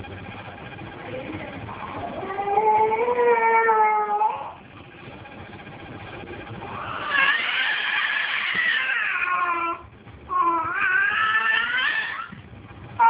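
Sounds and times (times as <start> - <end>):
animal wavering calls: 6.6 - 12.4.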